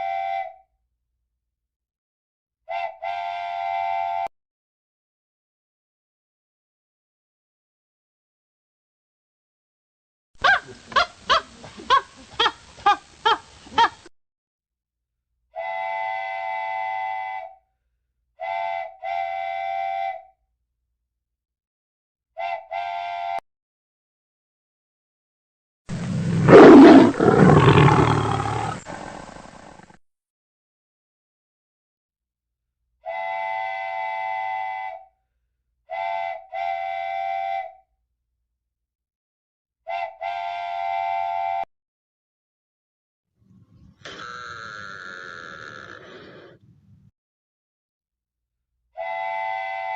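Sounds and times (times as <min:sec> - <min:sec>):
steam whistle blasts: 0:00.0 - 0:00.6, 0:02.7 - 0:04.3, 0:15.6 - 0:17.6, 0:18.4 - 0:20.3, 0:22.4 - 0:23.4, 0:33.0 - 0:35.1, 0:35.9 - 0:37.8, 0:39.9 - 0:41.6, 0:49.0 - 0:49.9
short steam whistle toot: 0:02.7 - 0:04.3, 0:15.6 - 0:17.6, 0:18.4 - 0:20.3, 0:33.0 - 0:35.1, 0:35.9 - 0:37.8, 0:39.9 - 0:41.6, 0:49.0 - 0:49.9.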